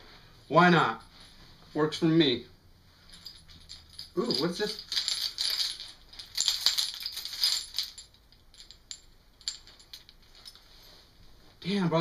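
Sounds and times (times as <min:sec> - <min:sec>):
small hard objects rattling: 0:03.2 - 0:10.6.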